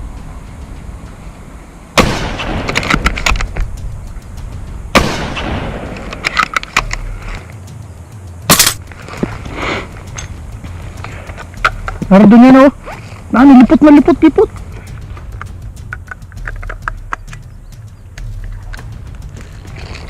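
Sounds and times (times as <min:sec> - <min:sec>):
burst of rapid fire: 0:02.0 - 0:03.4, 0:04.9 - 0:06.0
airsoft gun cracks: 0:08.5 - 0:08.8.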